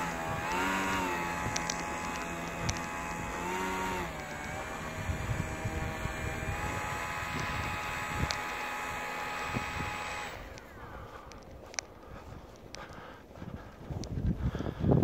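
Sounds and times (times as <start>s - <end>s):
model airplane motor whine: 0.0s - 11.9s.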